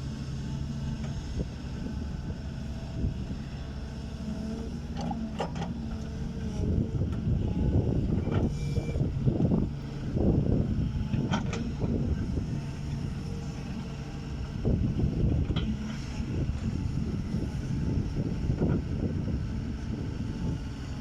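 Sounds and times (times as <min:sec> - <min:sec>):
excavator diesel engine working: 0:00.0 - 0:21.0.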